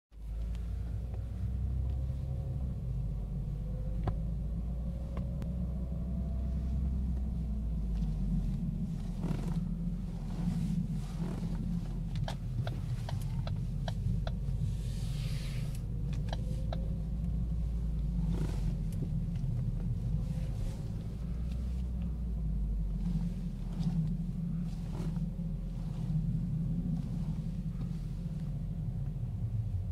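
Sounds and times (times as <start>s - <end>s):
car driving with low hum: 0.1s - 29.9s
scattered clicks: 12.1s - 14.4s, 15.7s - 16.9s.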